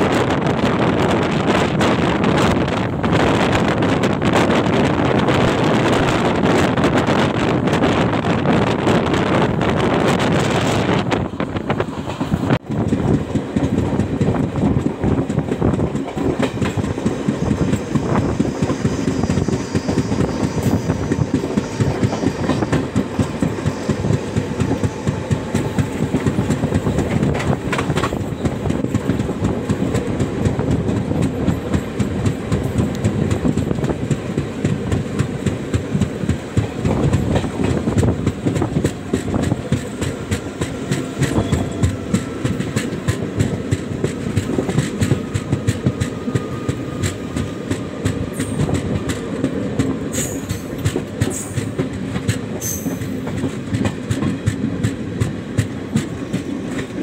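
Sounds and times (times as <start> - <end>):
train wheels rumbling on track: 0.0 - 57.0
wheels clicking over rail joints: 11.6 - 19.0, 21.1 - 57.0.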